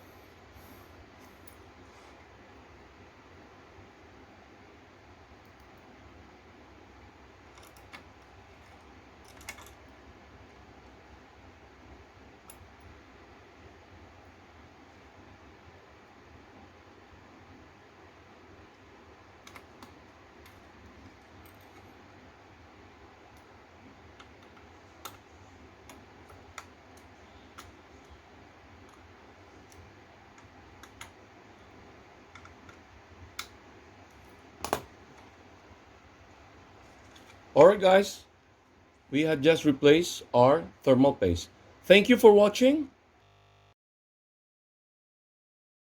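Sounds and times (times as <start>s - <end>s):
steady low hiss: 0.0s - 42.9s
small hard parts clicking: 7.5s - 9.8s
small clicks and taps of screws: 32.3s - 32.8s.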